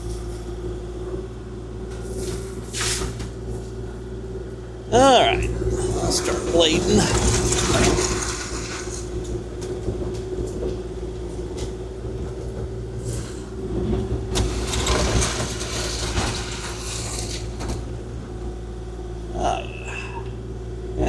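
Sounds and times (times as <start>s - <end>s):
excavator diesel engine: 0.0s - 21.0s
blade clanking and scraping gravel: 1.9s - 3.8s, 5.2s - 18.6s.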